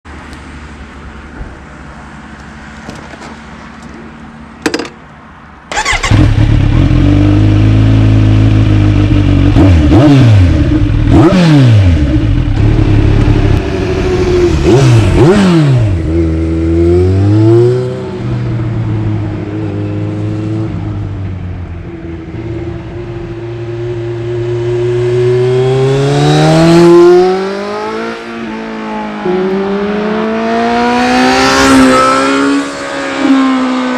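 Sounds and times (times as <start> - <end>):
motorcycle engine revving: 5.7 - 18.2, 23.6 - 33.9.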